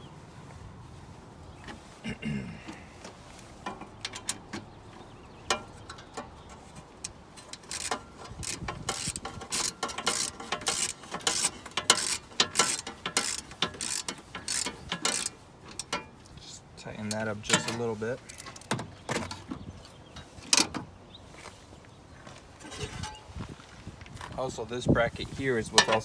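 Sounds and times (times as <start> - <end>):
hand ratchet clicking: 7.0 - 16.0.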